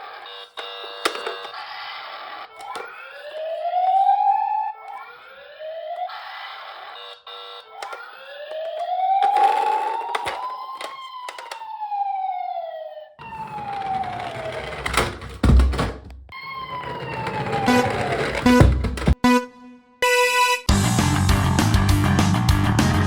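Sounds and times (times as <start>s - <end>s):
toy car electronic siren wailing: 0.0s - 15.3s, 16.3s - 19.1s.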